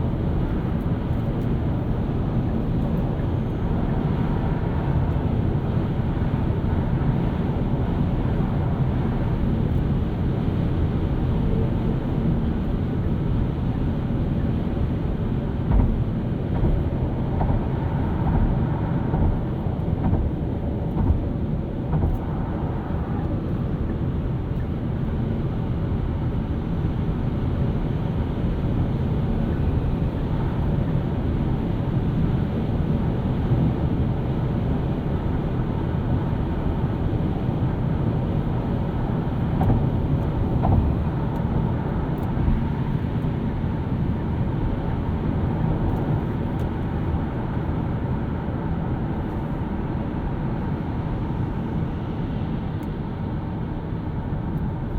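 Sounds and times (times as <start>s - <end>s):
road and tyre noise: 0.0s - 54.9s
knocks from road bumps: 21.0s - 21.2s.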